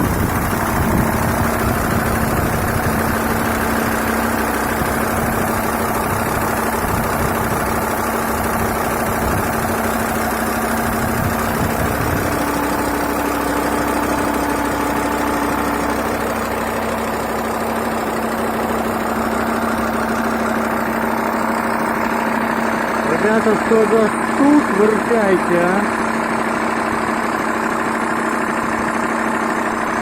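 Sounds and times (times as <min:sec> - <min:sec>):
diesel engine idling with knock: 0:00.0 - 0:30.0.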